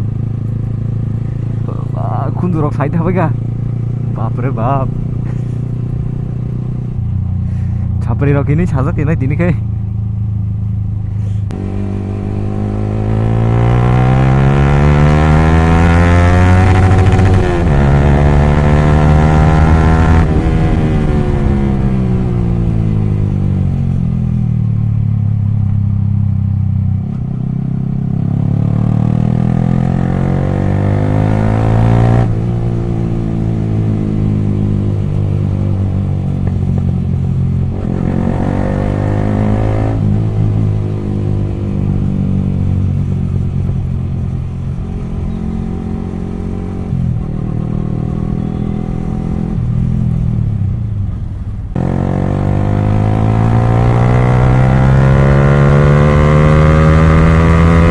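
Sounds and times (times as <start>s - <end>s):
loud motorcycle engine accelerating: 11.5s - 24.1s, 27.3s - 50.6s, 51.7s - 57.9s.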